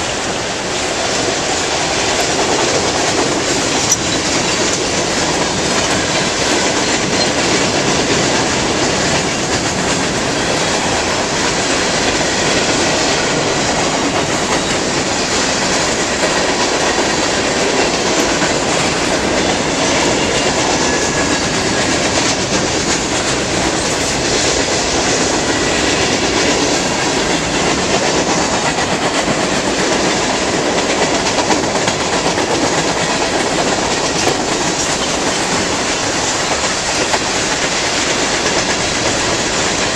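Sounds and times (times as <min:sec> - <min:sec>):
train wheels clattering over rails: 0:00.0 - 0:39.9.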